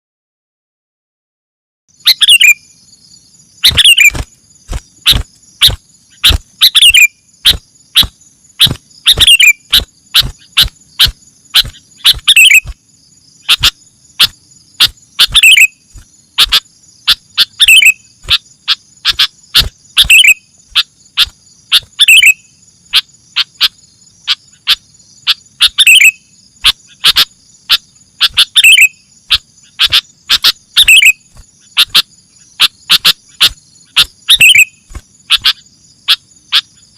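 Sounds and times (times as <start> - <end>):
bird chirping: 1.9 - 36.9.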